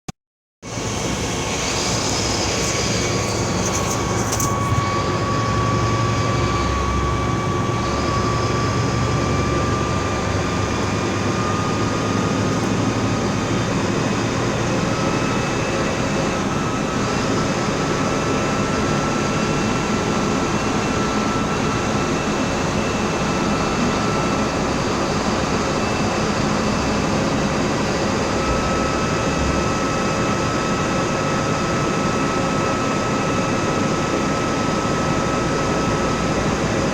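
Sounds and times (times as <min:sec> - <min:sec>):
high-pitched whine: 0:00.6 - 0:33.3
bus diesel engine running: 0:00.7 - 0:13.8.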